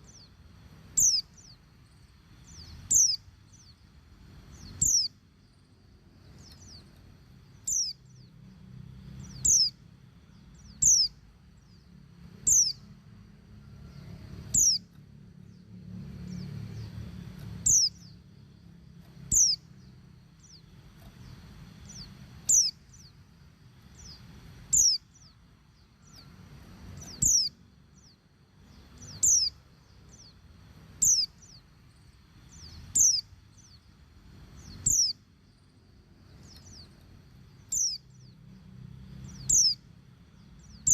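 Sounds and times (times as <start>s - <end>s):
white-eye bird calling: 0.9s - 1.6s, 2.4s - 3.8s, 4.5s - 5.2s, 7.5s - 8.3s, 9.2s - 9.8s, 10.5s - 11.8s, 12.4s - 12.9s, 14.5s - 14.9s, 17.6s - 18.2s, 19.3s - 23.2s, 23.9s - 26.3s, 27.0s - 30.3s, 31.0s - 31.6s, 32.5s - 33.8s, 34.6s - 35.3s, 37.6s - 38.4s, 39.2s - 39.9s, 40.6s - 40.9s.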